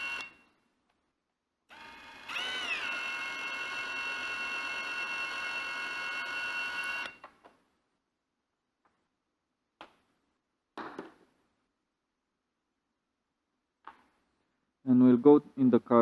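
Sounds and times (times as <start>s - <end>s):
cordless drill motor whining: 0.0s - 0.4s, 1.7s - 7.3s.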